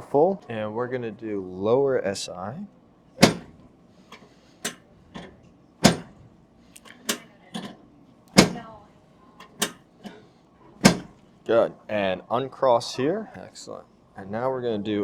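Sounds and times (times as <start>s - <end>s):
sharp joint clacks: 3.2s - 6.2s, 6.8s - 8.8s, 9.4s - 10.2s, 10.8s - 11.2s.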